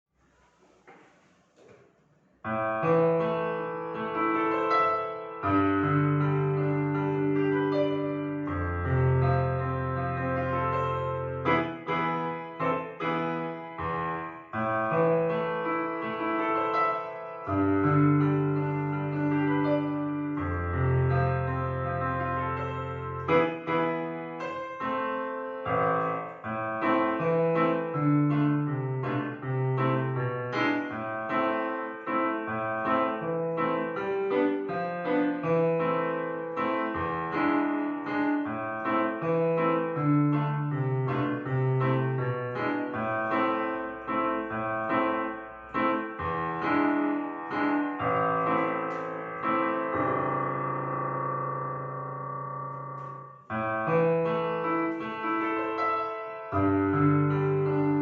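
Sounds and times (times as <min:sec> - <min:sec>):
piano music: 0:02.4 - 0:58.0.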